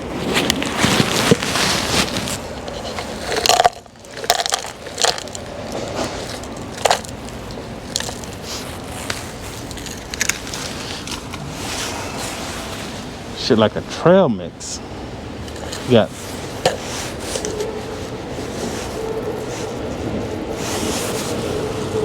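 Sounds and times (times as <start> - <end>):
plastic packet crinkling: 0.6 - 11.3.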